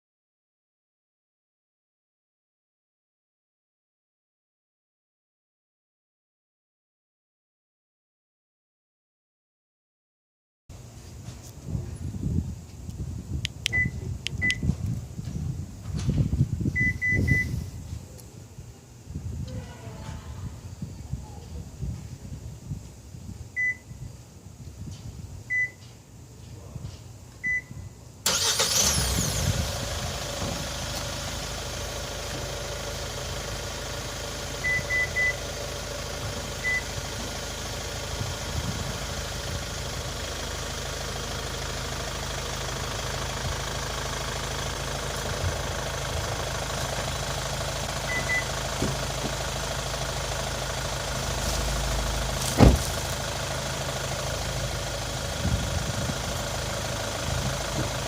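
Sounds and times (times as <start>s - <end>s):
car engine starting and idling: 12.7s - 18.4s, 27.4s - 58.0s
short electronic beeps: 13.7s - 14.7s, 16.8s - 17.6s, 48.1s - 48.5s.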